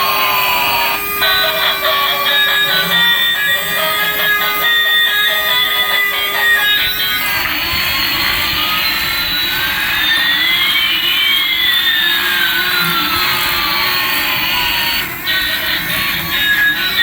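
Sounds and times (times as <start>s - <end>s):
wavering low hum: 0.0s - 17.0s
whistling tones: 0.0s - 17.0s.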